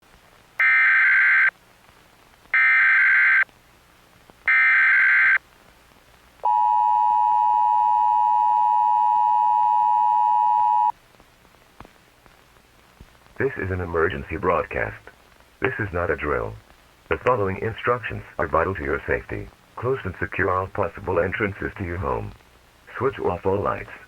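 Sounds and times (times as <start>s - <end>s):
two-tone attention signal: 6.5s - 10.9s.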